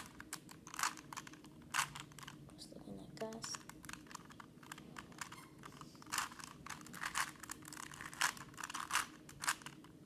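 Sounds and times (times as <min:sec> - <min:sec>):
puzzle cube clicking as twisted: 0:00.0 - 0:02.4, 0:03.4 - 0:10.0.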